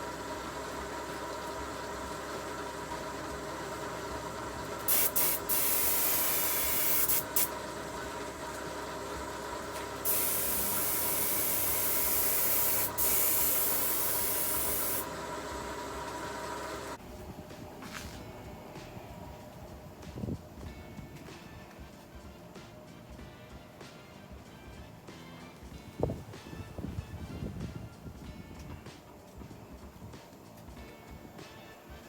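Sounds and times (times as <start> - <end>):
steady hum: 0.0 - 32.0
hissing spray: 4.8 - 7.6, 9.8 - 15.2.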